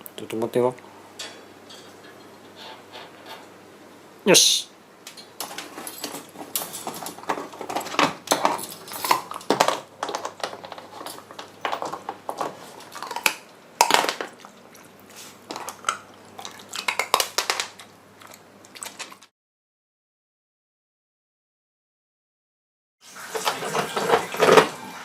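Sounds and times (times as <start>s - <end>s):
dog crunching ice cubes: 5.4s - 19.3s.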